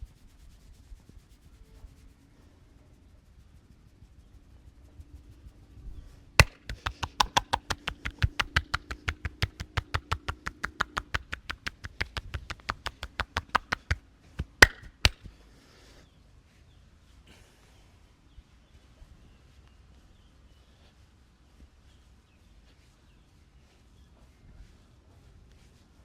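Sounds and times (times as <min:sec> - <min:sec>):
hands chopping in massage rhythm: 0:06.4 - 0:15.4
loud hand slaps: 0:06.4 - 0:15.4.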